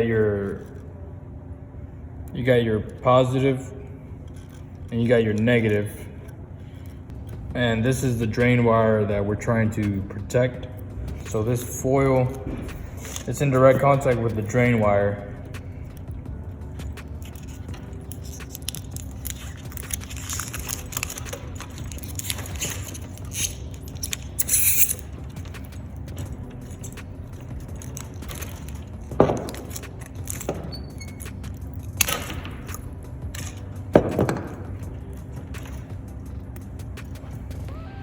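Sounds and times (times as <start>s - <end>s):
crinkle of foil shield and wires: 11.0s - 33.8s.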